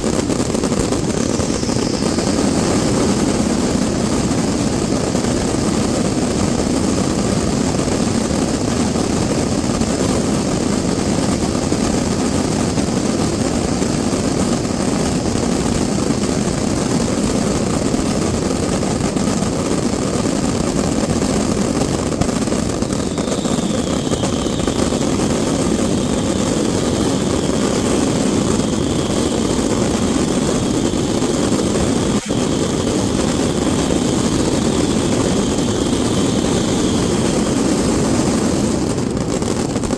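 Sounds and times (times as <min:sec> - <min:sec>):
fireworks barrage: 0:00.0 - 0:39.9
faint wavering whistle: 0:01.0 - 0:04.2, 0:22.6 - 0:31.1, 0:31.9 - 0:37.4.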